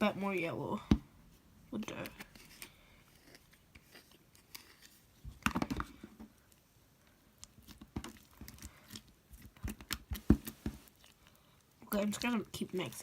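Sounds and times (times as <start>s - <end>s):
slime squishing and popping: 7.4s - 11.2s.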